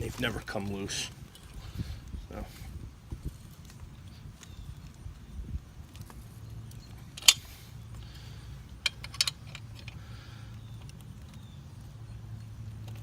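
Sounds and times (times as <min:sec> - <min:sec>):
low steady hum: 0:00.0 - 0:13.0
metal clicks of allen key and bolt: 0:07.1 - 0:07.5, 0:08.8 - 0:10.0.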